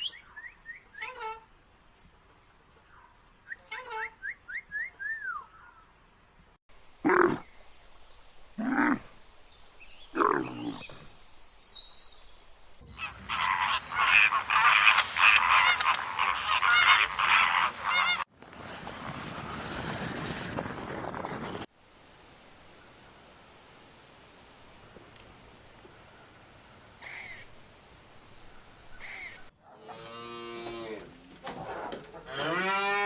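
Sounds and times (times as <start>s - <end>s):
short pitched animal calls: 12.9s - 18.2s
rapid chattering animal calls: 12.9s - 18.3s
steady hiss: 12.9s - 18.3s.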